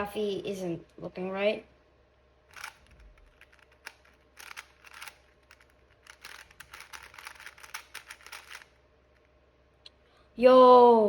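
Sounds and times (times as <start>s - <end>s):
plastic cube clacking: 2.5s - 8.8s.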